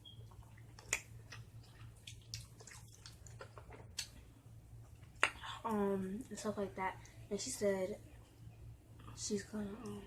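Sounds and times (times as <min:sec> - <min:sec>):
wet smacks and clicks: 0:00.0 - 0:04.2, 0:04.8 - 0:05.8
person chewing wetly: 0:00.0 - 0:05.6.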